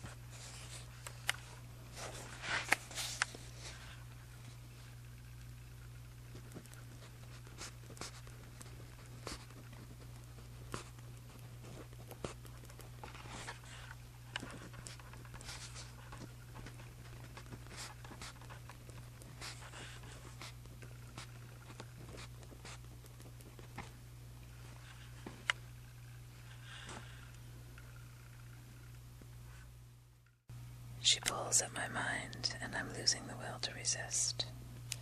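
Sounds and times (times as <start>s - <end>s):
steady low hum: 0.0s - 35.0s
pen scratching on paper: 7.0s - 13.8s, 17.3s - 18.6s.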